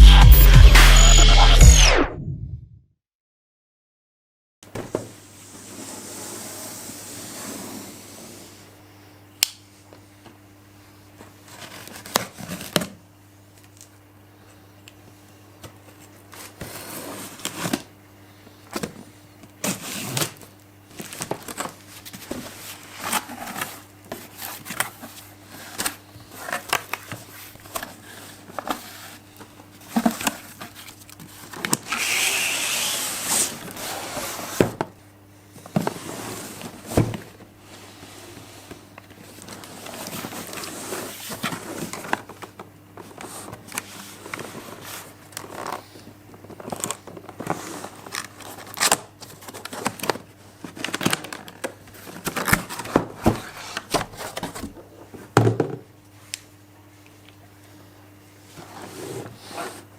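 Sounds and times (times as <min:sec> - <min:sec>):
cardboard and plastic packaging handled: 0:11.2 - 0:13.0, 0:15.6 - 0:18.0, 0:18.7 - 0:34.9, 0:35.6 - 0:55.4
packaging rustling and tearing: 0:43.3 - 0:54.6.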